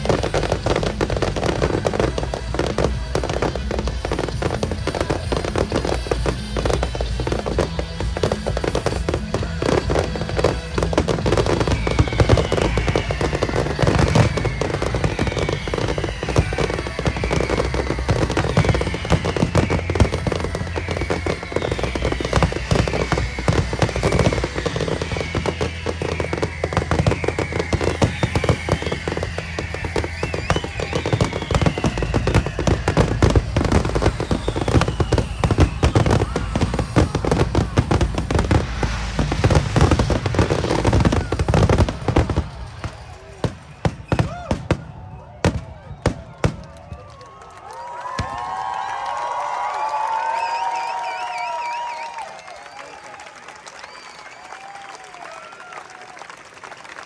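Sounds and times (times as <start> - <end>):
music: 0.0 - 46.7
falling whistling tones: 0.0 - 56.0
fireworks bangs and crackling: 0.0 - 57.0.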